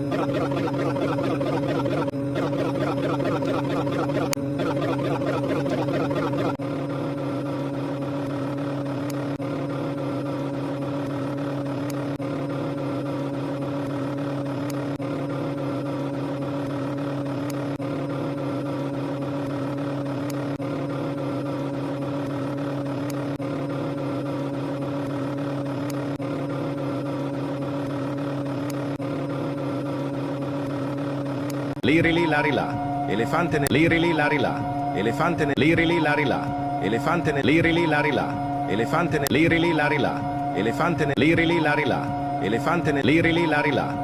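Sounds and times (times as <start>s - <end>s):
engine-like drone with low hum: 0.0s - 44.0s.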